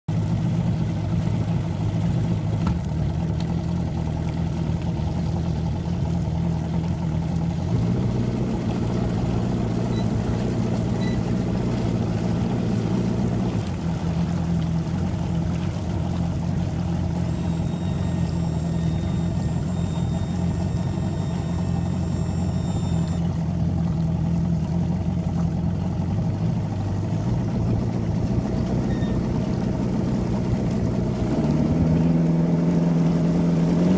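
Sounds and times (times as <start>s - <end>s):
outboard motor running: 0.1s - 33.9s.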